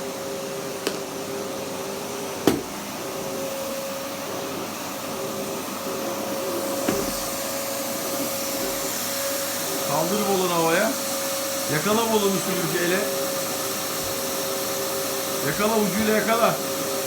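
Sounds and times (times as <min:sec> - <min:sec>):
vacuum cleaner running: 0:00.0 - 0:17.0
sharp knock: 0:02.5 - 0:02.7.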